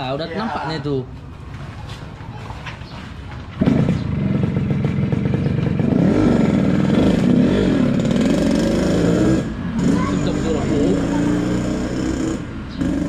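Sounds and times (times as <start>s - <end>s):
two-stroke motorcycle revving: 3.5s - 13.0s.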